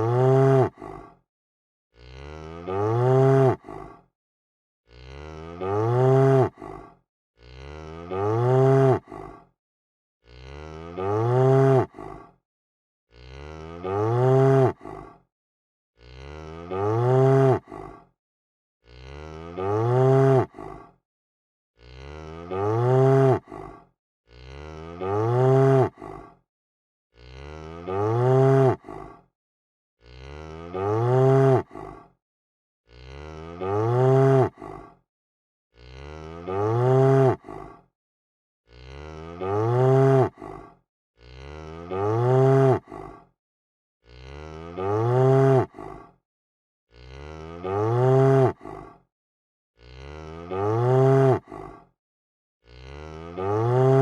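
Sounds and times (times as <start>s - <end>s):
cow mooing: 0.0s - 0.7s, 2.0s - 3.6s, 4.9s - 6.6s, 7.4s - 9.1s, 10.3s - 11.9s, 13.1s - 14.8s, 16.0s - 17.7s, 18.9s - 20.5s, 21.8s - 23.5s, 24.3s - 26.0s, 27.2s - 28.8s, 30.0s - 31.6s, 32.9s - 34.6s, 35.8s - 37.4s, 38.7s - 40.4s, 41.2s - 42.9s, 44.1s - 45.7s, 46.9s - 48.6s, 49.8s - 51.5s, 52.7s - 54.0s.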